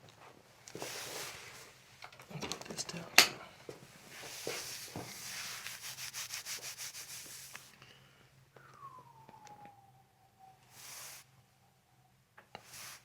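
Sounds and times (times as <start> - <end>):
rustling on treatment table: 0.1 - 1.8, 3.7 - 7.8
faint tone sliding down: 8.5 - 13.0.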